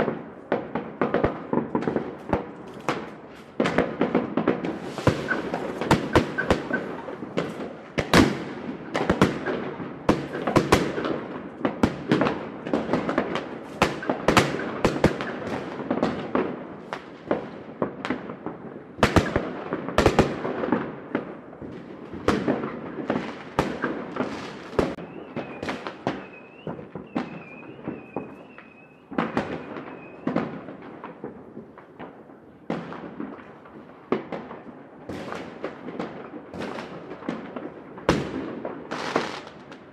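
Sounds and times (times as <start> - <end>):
fireworks bangs and crackles: 0.0 - 39.9
thin wavering whistle: 25.0 - 30.3.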